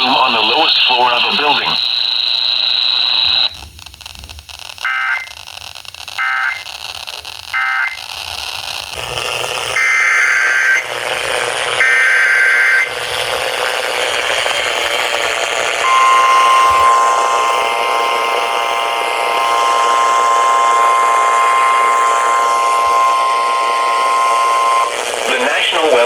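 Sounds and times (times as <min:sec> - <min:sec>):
radio hiss: 0:00.0 - 0:26.0
steady warning alarm tone: 0:04.9 - 0:05.4, 0:06.2 - 0:06.7, 0:07.6 - 0:08.1, 0:09.0 - 0:26.0
warbling data tone bursts: 0:09.4 - 0:26.0.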